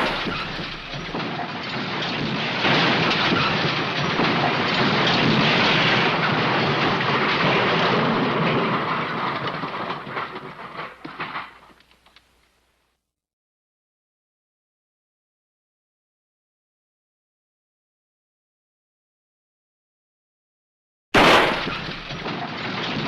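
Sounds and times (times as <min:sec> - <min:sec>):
rumbling roar of tumbling debris: 0:00.0 - 0:12.2, 0:21.2 - 0:23.0.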